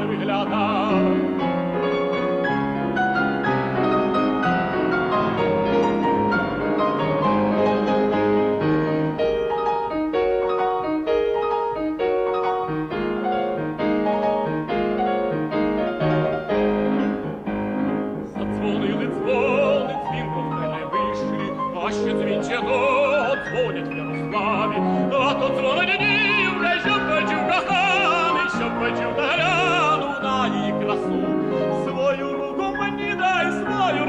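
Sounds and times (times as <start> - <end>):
man singing with vibrato: 0.0 - 1.5, 18.4 - 34.0
piano playing chords and melody: 0.0 - 34.0.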